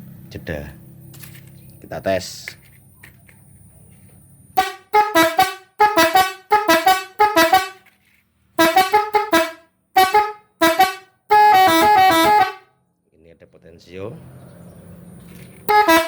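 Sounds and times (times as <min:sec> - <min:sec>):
horn playing quick blasts: 0:04.6 - 0:07.9, 0:08.6 - 0:12.7, 0:15.7 - 0:16.0.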